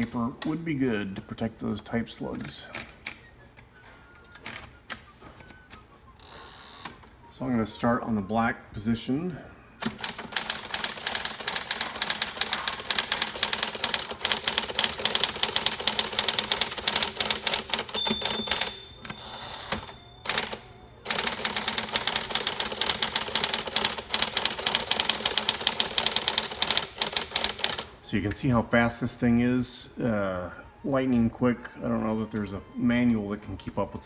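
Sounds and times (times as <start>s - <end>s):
electric typewriter typing fast: 9.8s - 27.9s.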